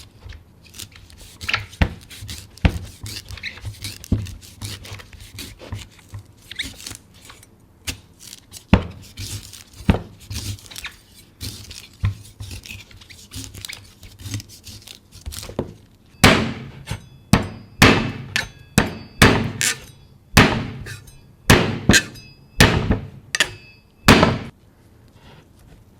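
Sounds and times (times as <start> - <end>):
knife chopping coconut: 1.2 - 6.9, 11.4 - 24.5.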